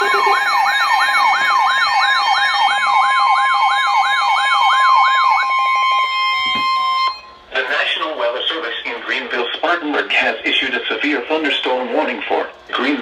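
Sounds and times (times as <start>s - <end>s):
high alert tone: 0.0s - 3.2s
siren-like falling sweep: 0.0s - 7.3s.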